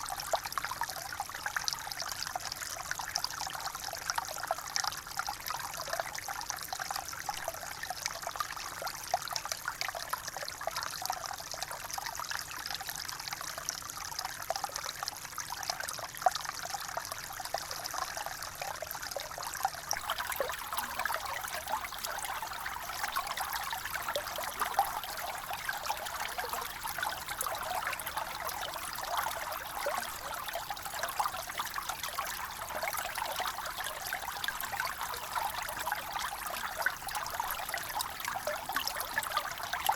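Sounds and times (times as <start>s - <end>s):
water trickling and splashing: 12.8s - 39.9s.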